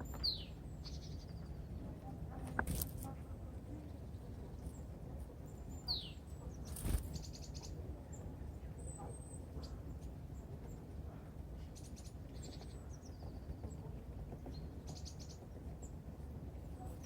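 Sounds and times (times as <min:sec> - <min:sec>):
small birds calling: 0:00.0 - 0:10.8, 0:14.5 - 0:16.0.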